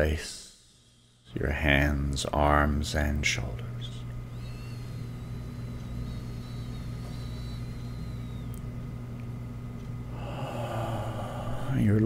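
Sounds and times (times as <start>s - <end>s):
faint high wavering tone: 0.0s - 2.2s, 3.8s - 9.1s
low electrical hum: 0.0s - 12.0s
soft breathy rush: 10.1s - 12.0s.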